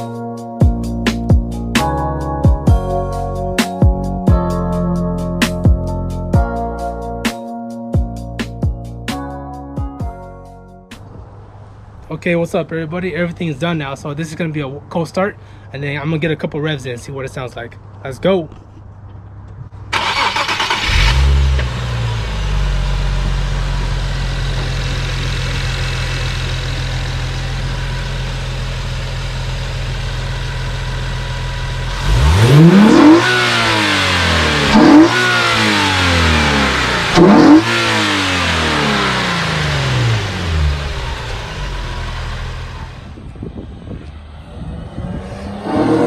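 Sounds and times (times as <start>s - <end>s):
car engine idling and revving: 19.3s - 46.0s.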